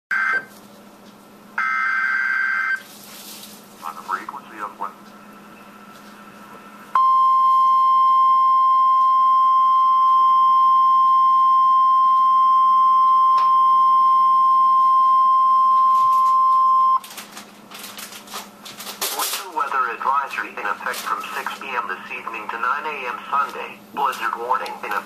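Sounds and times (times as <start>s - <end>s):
steady alarm beep: 7.0s - 17.0s
radio crackle: 19.0s - 25.0s.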